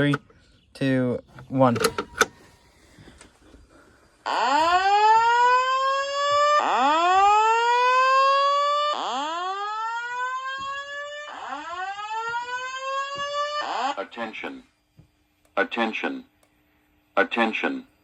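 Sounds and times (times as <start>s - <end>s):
slow whoop alarm tone: 4.2s - 14.0s.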